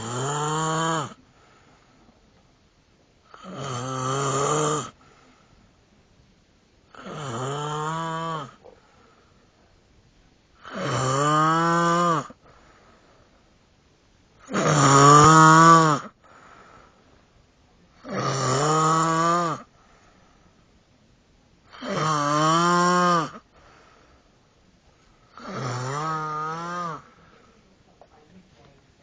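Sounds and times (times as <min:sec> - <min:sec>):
child snoring: 0:00.0 - 0:01.2, 0:03.3 - 0:05.0, 0:06.9 - 0:08.6, 0:10.6 - 0:12.4, 0:14.4 - 0:16.9, 0:18.0 - 0:19.7, 0:21.7 - 0:23.5, 0:25.3 - 0:27.3
faint breath out: 0:01.2 - 0:02.2, 0:05.0 - 0:05.8, 0:08.6 - 0:09.7, 0:12.4 - 0:13.5, 0:16.2 - 0:17.3, 0:19.7 - 0:20.7, 0:23.4 - 0:24.5, 0:27.0 - 0:28.0.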